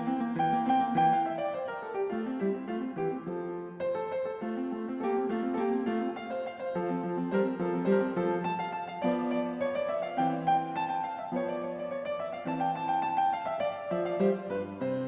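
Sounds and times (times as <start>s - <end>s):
background piano music: 0.0s - 15.0s.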